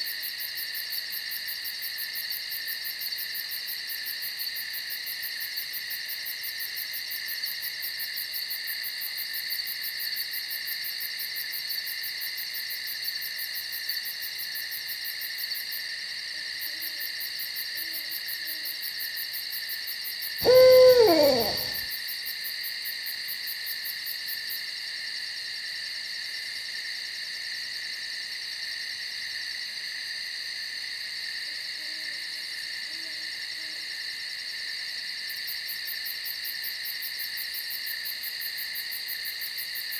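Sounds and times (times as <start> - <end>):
insects chirring: 20.4 - 21.8
faint low owl calls: 20.4 - 21.9
owl hooting: 20.4 - 21.9.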